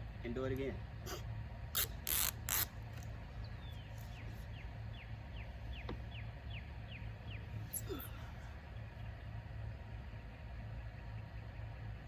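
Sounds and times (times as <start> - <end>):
steady low hum: 0.0 - 12.0
brief rasping noises: 1.8 - 2.7
bird chirping: 1.8 - 9.4.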